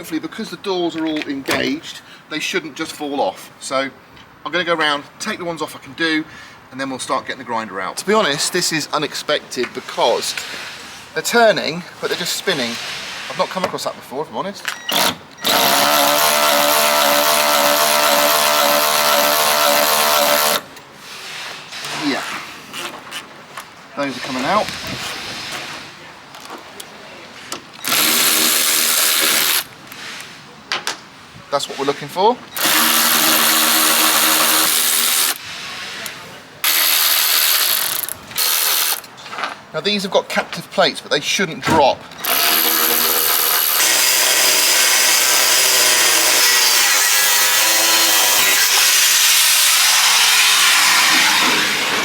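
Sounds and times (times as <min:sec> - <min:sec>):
power tool motor running: 0:14.9 - 0:20.7, 0:27.8 - 0:29.7, 0:32.6 - 0:35.4, 0:36.6 - 0:39.0, 0:42.2 - 0:52.0.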